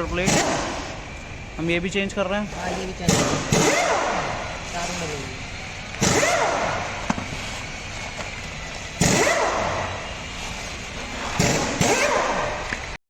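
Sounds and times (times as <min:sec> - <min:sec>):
loud bangs: 0:00.0 - 0:01.2, 0:02.9 - 0:05.1.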